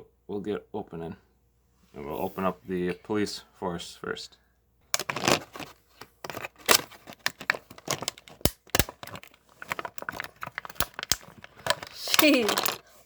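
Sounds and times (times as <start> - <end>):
packaging torn and crinkled: 5.0 - 5.6, 6.5 - 12.9.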